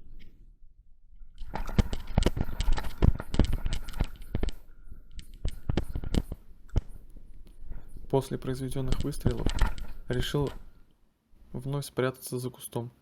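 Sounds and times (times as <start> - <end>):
sharp clicks: 1.4 - 7.6, 8.4 - 10.7.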